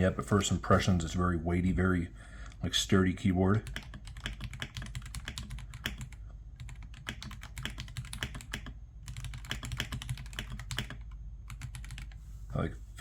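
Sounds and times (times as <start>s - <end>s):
mechanical keyboard typing: 3.6s - 12.2s.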